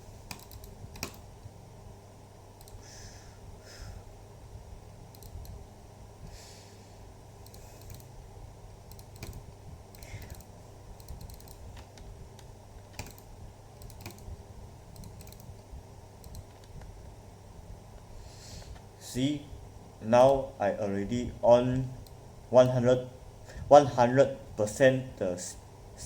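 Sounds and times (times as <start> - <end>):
low background hum: 0.0 - 26.0
computer keys clicking: 0.2 - 1.2, 2.6 - 2.8, 5.1 - 5.6, 7.4 - 8.1, 8.8 - 14.3, 14.9 - 15.6, 16.2 - 16.9.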